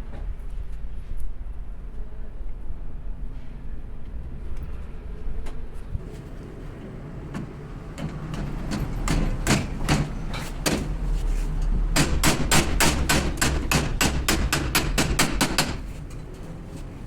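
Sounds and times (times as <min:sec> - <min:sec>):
hammer blows on metal: 0:07.4 - 0:16.0.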